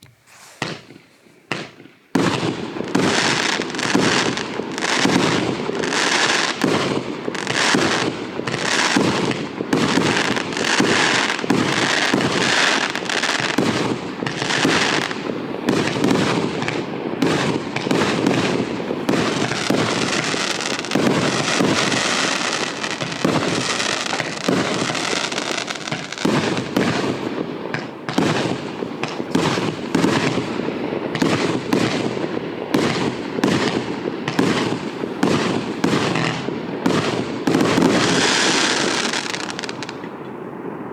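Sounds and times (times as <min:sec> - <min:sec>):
sharp firework pops: 0:00.0 - 0:40.4
firework launches and aerial bursts: 0:00.2 - 0:06.7.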